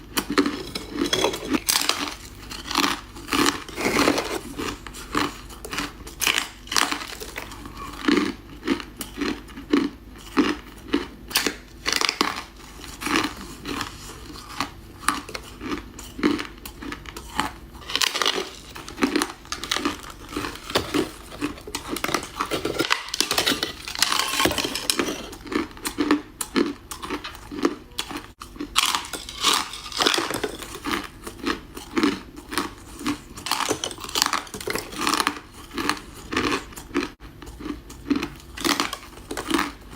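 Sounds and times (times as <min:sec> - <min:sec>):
ice crunching: 0:00.3 - 0:08.2, 0:17.8 - 0:26.2, 0:26.9 - 0:36.8, 0:37.6 - 0:39.9.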